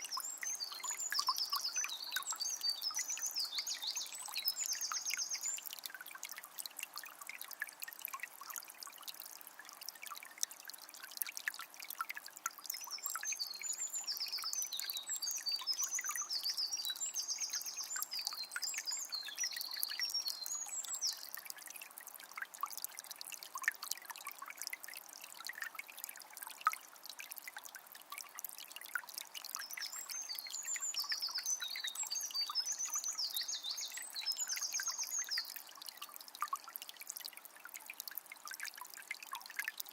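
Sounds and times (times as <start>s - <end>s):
songbird singing: 0.0s - 5.7s, 12.8s - 21.4s, 29.6s - 36.0s
spring water trickling and splashing: 0.0s - 39.9s.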